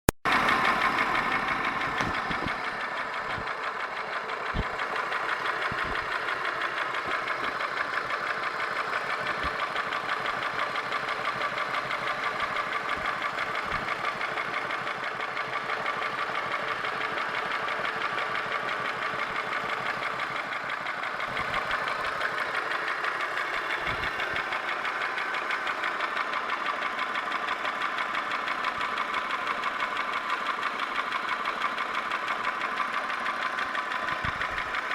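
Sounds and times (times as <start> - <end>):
car engine idling: 0.3 - 34.9
fast even engine ticking: 0.3 - 34.9.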